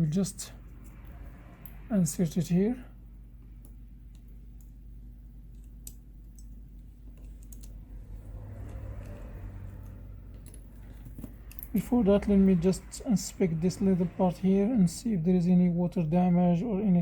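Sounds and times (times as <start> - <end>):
steady low hum: 0.0 - 17.0
tweezers clicking and tapping: 3.4 - 4.8, 5.5 - 7.8, 8.9 - 11.8.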